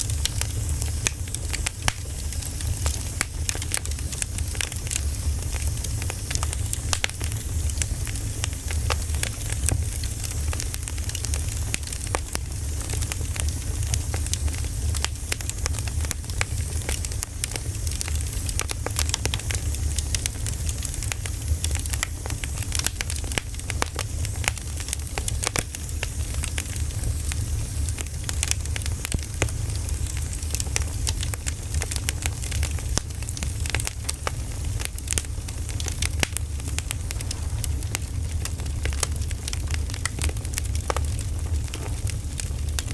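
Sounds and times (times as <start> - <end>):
campfire crackling and popping: 0.0 - 42.9
fire low rumble: 0.0 - 42.9.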